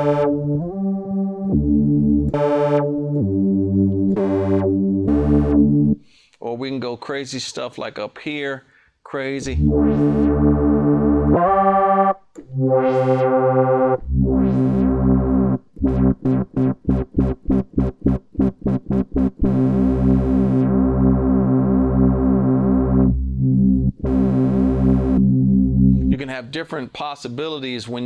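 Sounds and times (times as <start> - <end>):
synth bass notes: 0.0 - 6.0, 9.4 - 26.3.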